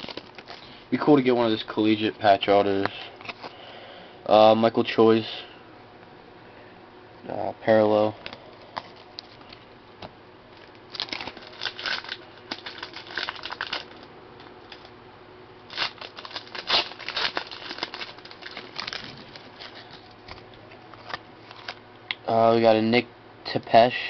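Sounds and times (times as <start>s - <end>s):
card pack wrapper crinkling: 0.0s - 0.8s, 2.6s - 3.6s, 10.5s - 14.1s, 15.7s - 21.8s
cards rustling and ticking: 0.0s - 0.8s, 2.6s - 3.6s, 10.5s - 14.1s, 15.7s - 21.8s.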